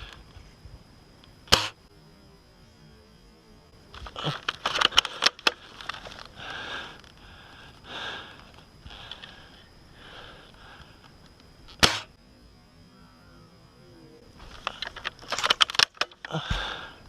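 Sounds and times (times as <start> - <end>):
sharp clicks and knocks: 14.5 - 16.6.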